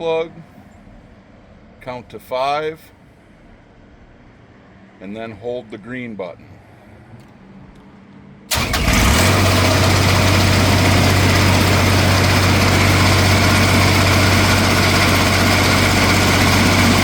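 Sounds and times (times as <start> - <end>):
diesel engine starting and idling: 8.5 - 17.0.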